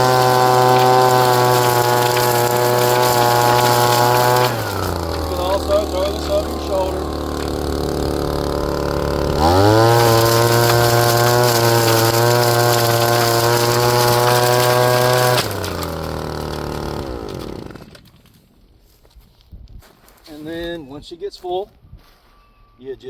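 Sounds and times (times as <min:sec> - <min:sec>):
leaf blower engine revving: 0:00.0 - 0:18.4.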